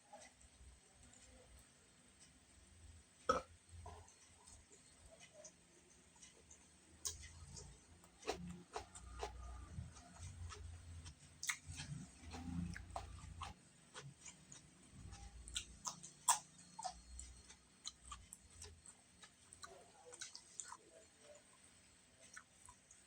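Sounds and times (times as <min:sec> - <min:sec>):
chewing with wet mouth clicks: 0:06.5 - 0:21.6.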